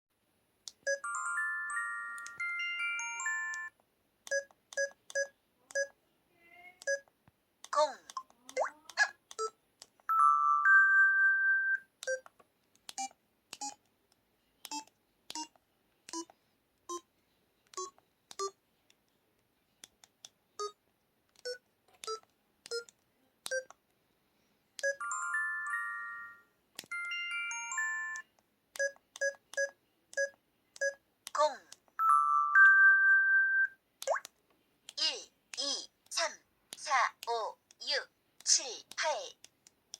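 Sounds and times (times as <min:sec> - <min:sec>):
held two-tone beep: 0:00.9 - 0:01.1, 0:04.3 - 0:05.9, 0:06.8 - 0:07.1, 0:28.8 - 0:31.0.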